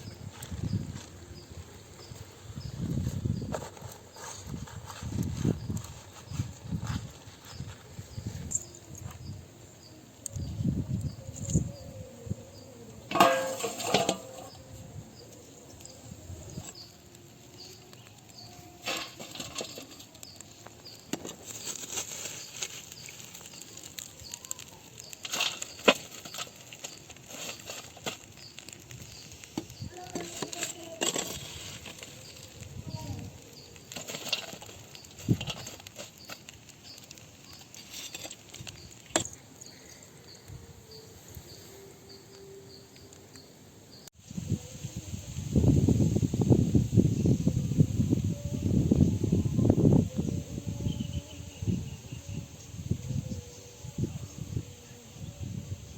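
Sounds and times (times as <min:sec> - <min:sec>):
insects chirping: 0:00.0 - 0:55.9
cooking utensils clinking and knocking: 0:13.1 - 0:14.5.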